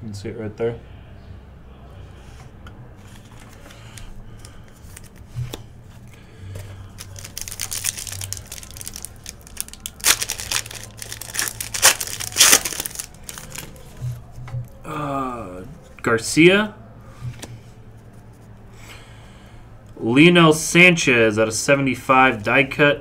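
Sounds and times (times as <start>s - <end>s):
card pack wrappers crinkling and tearing: 3.1s - 5.3s, 6.0s - 14.0s.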